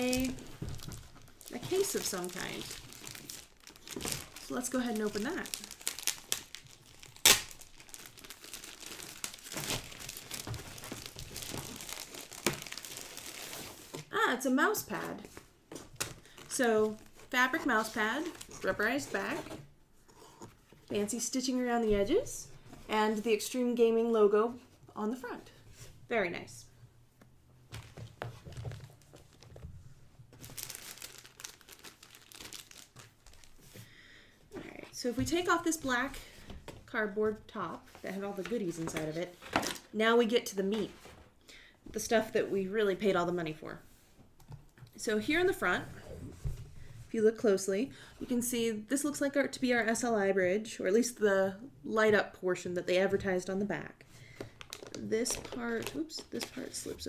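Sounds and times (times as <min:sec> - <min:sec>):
packaging crinkling and rustling: 0:00.0 - 0:14.1, 0:27.7 - 0:33.8, 0:54.4 - 0:57.0.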